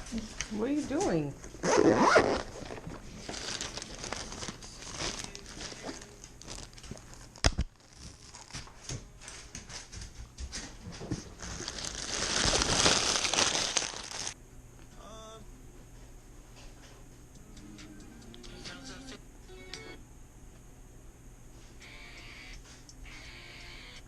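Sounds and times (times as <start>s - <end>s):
close rustling and crinkling: 0.3s - 14.4s.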